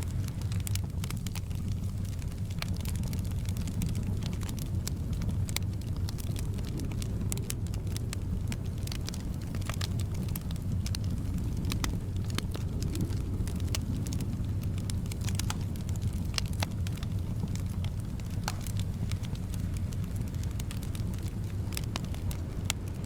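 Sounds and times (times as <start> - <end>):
soft wind: 0.0 - 23.0
wood fire crackling and popping: 0.0 - 23.0.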